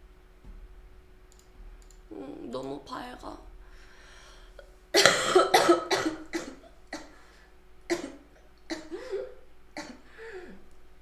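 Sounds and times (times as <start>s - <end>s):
woman coughing: 5.0s - 7.2s, 7.9s - 10.6s.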